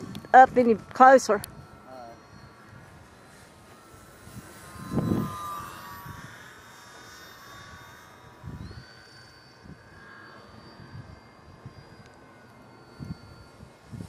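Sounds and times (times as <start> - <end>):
model airplane motor whining: 0.0 - 14.0.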